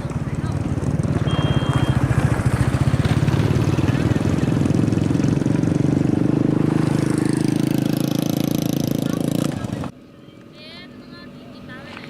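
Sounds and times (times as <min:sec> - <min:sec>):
minibike engine running: 0:00.0 - 0:09.9.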